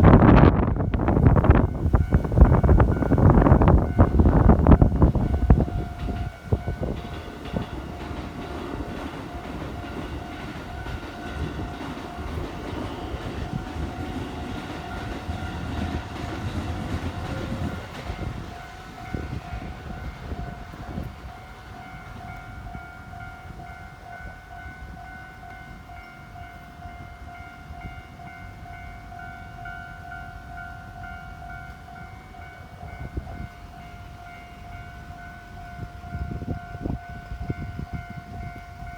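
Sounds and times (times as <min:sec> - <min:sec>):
electric train rumbling: 0:00.0 - 0:38.9
level crossing warning bell: 0:00.0 - 0:38.9
train wheel clicks: 0:00.9 - 0:22.8.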